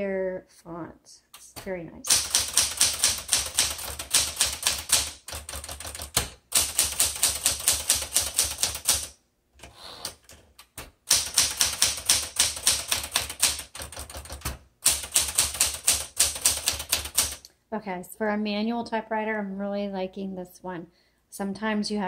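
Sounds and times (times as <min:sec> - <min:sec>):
manual typewriter typing: 0:02.1 - 0:17.4.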